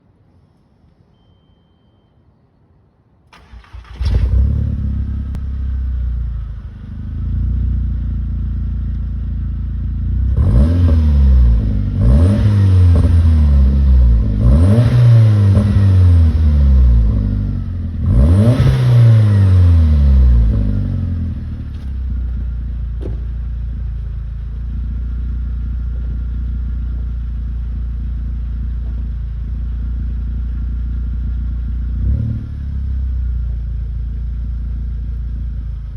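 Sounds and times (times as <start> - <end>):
car engine starting and idling: 3.2 - 35.9
engine revving: 3.4 - 5.6, 10.2 - 21.6, 31.8 - 33.5.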